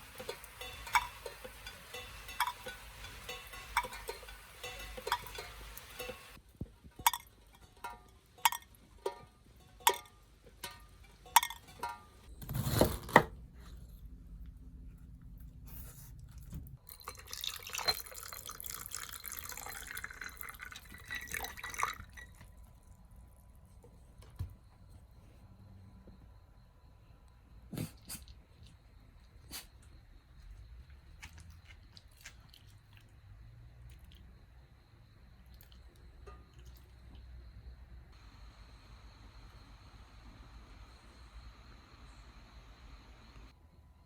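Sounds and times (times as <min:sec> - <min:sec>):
soft hiss: 0:00.0 - 0:12.2, 0:38.1 - 0:43.6
water drops plinking: 0:00.1 - 0:06.4, 0:16.9 - 0:22.5.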